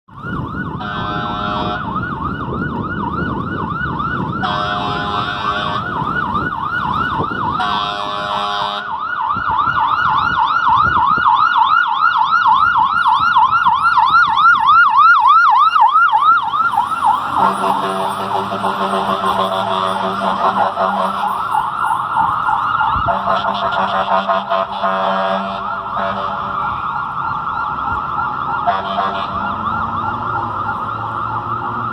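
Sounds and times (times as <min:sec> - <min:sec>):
electronic siren yelping: 0:00.1 - 0:31.9
air horn blasts: 0:00.8 - 0:01.8, 0:04.4 - 0:06.1, 0:07.5 - 0:09.0, 0:17.3 - 0:21.4, 0:23.0 - 0:26.5, 0:28.6 - 0:29.5
low steady horn tone: 0:00.8 - 0:01.8, 0:04.4 - 0:06.2, 0:07.5 - 0:08.9, 0:17.1 - 0:21.5, 0:23.0 - 0:26.6, 0:28.6 - 0:29.6.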